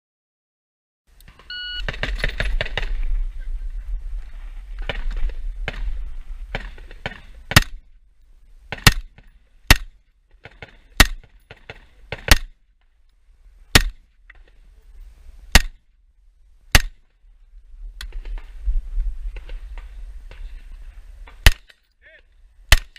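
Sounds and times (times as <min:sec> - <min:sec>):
shot timer beep: 0:01.5 - 0:01.9
low wind rumble: 0:01.8 - 0:10.3, 0:11.8 - 0:21.5
loud rifle shots: 0:08.7 - 0:12.6.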